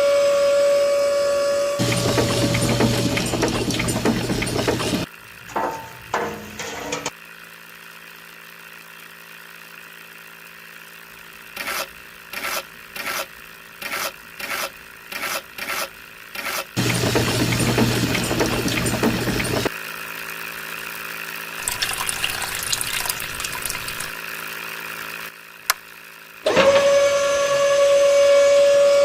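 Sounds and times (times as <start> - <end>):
small electric motor running: 0.3 - 5.5, 7.1 - 29.0
short motor bursts: 8.3 - 19.7.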